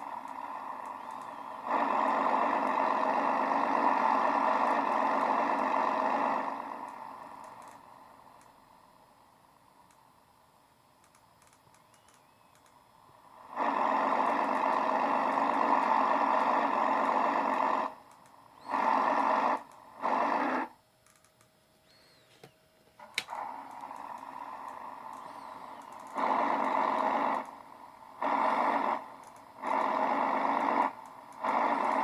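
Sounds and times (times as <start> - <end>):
click: 6.8 - 7.8, 8.4 - 8.6, 9.8 - 10.0, 11.0 - 12.8, 18.1 - 18.4, 21.0 - 21.5, 22.4 - 26.2, 29.2 - 29.5.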